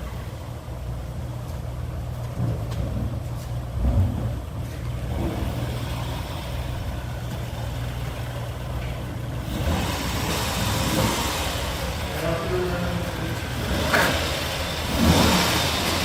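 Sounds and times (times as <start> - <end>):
vehicle engine humming: 0.0 - 16.0.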